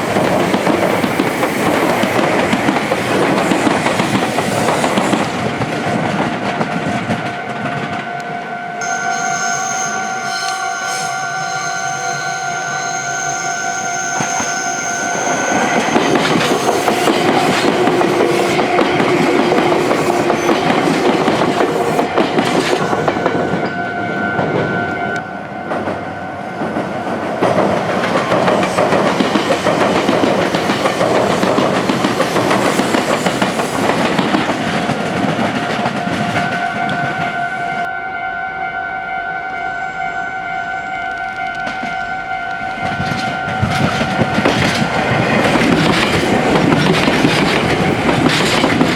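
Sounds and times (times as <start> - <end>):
level crossing warning alarm: 6.4 - 27.5, 35.3 - 48.8
wheels clattering over rail joints: 42.8 - 48.9.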